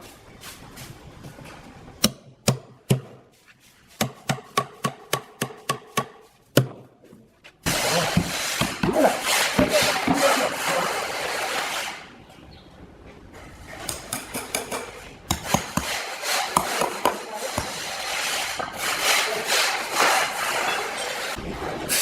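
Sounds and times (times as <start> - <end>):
tool rasping into wood: 15.3 - 20.4.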